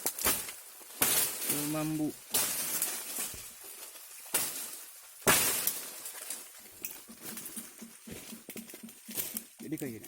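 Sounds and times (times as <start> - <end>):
vine snapping with woody cracks: 0.0 - 7.5
faint ticks and rustles: 6.0 - 10.0.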